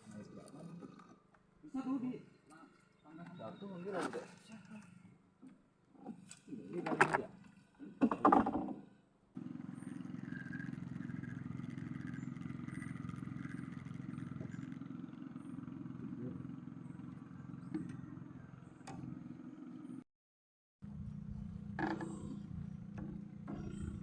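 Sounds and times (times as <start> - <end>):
motor humming: 9.4 - 20.0, 20.9 - 24.0.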